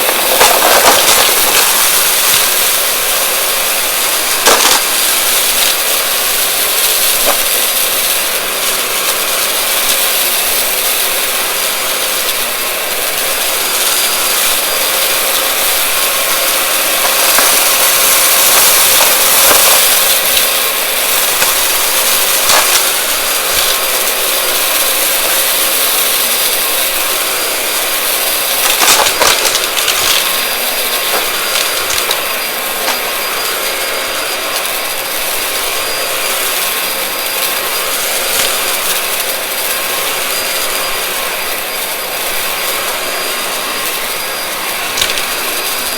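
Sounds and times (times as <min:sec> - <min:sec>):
debris crunching into vacuum: 0:00.0 - 0:07.8, 0:14.1 - 0:25.6, 0:26.9 - 0:34.0, 0:44.8 - 0:45.9
vacuum cleaner motor whining: 0:00.0 - 0:45.9.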